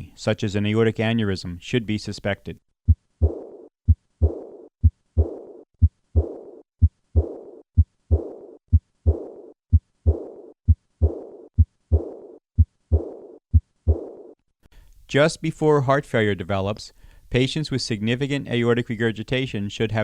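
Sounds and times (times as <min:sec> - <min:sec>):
heartbeat thumps: 0:02.9 - 0:14.4
high-pitched blowing heart murmur: 0:02.9 - 0:14.4.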